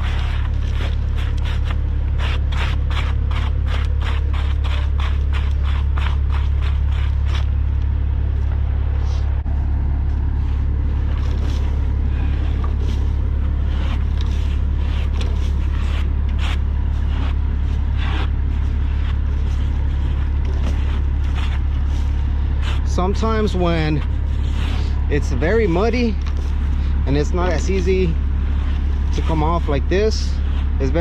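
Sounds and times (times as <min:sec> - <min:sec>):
diesel engine idling: 0:00.0 - 0:31.0
dirt scraped off steel tracks: 0:11.0 - 0:31.0.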